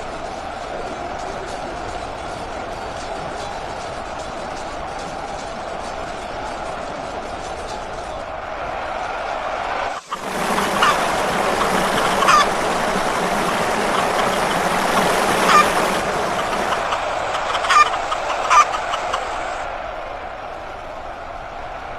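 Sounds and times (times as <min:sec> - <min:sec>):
chickens clucking: 0:09.9 - 0:19.6
chicken squawks: 0:10.0 - 0:19.6.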